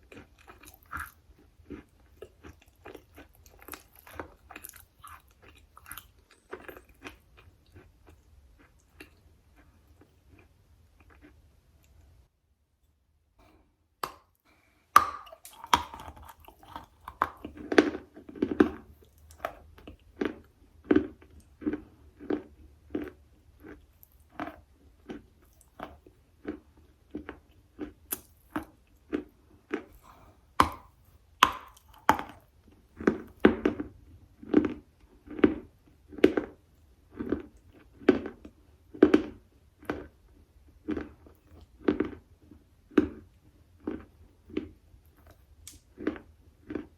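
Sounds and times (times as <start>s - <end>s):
person chewing with crunching: 0.0s - 12.2s, 15.0s - 46.9s.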